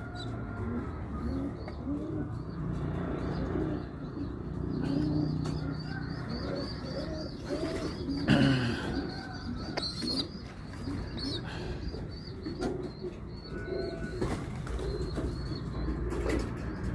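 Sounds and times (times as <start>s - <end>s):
pigeons cooing: 0.0s - 16.9s.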